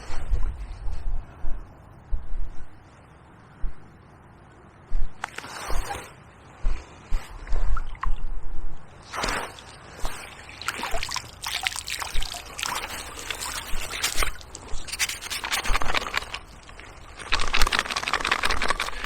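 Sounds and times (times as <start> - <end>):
river water splashing: 9.0 - 19.0
rubbing and rustling: 11.0 - 19.0.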